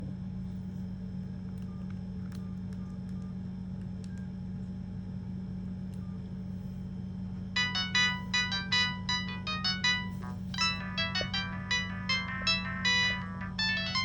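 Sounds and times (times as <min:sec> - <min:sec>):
steady low hum: 0:05.8 - 0:14.0.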